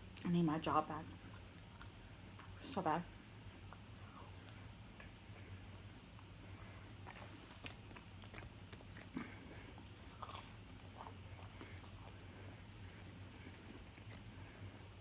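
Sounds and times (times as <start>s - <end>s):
faint low hum: 0.0s - 15.0s
person chewing pizza: 1.1s - 15.0s.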